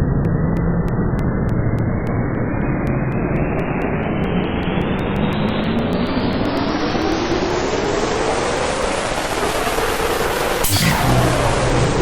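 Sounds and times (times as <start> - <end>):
clicks speeding up: 0.0 - 6.0
rushing rumble rising in pitch: 10.8 - 12.0.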